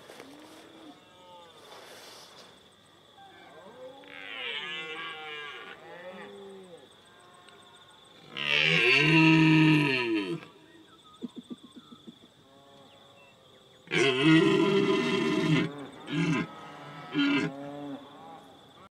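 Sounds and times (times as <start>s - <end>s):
animal calling: 13.8s - 17.6s
animal grunting: 13.9s - 17.6s.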